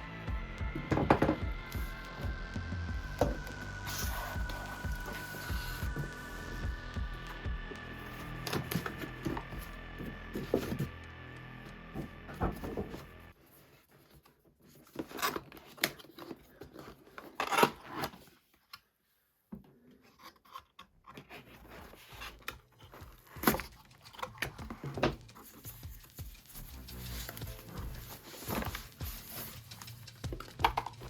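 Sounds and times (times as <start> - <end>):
packaging rustling and tearing: 21.2 - 31.0.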